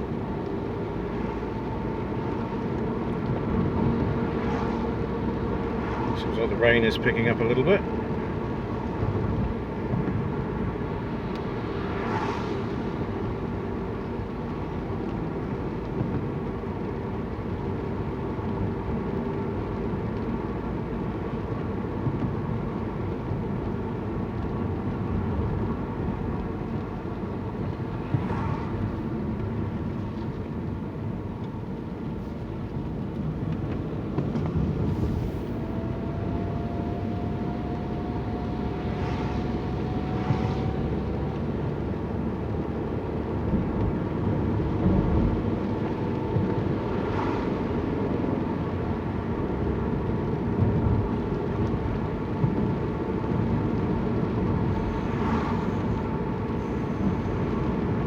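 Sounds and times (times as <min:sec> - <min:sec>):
low outdoor rumble: 0:00.0 - 0:58.0
vehicle passing on wet street: 0:00.0 - 0:58.0.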